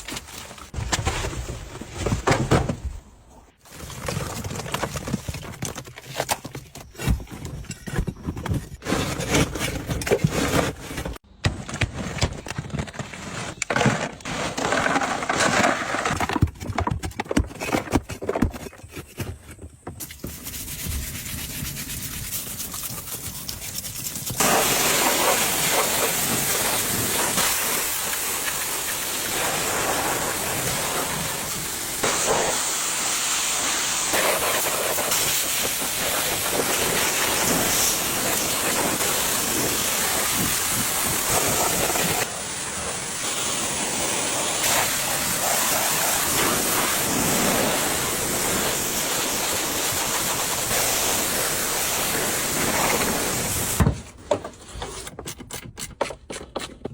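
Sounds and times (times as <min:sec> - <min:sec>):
scraping and rubbing: 0:03.6 - 0:30.1
pressure washer spraying: 0:24.4 - 0:53.8.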